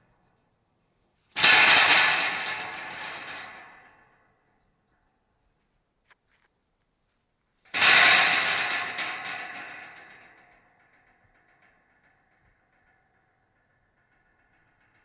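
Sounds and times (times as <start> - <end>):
scrap metal clattering: 1.3 - 3.9, 7.7 - 11.3.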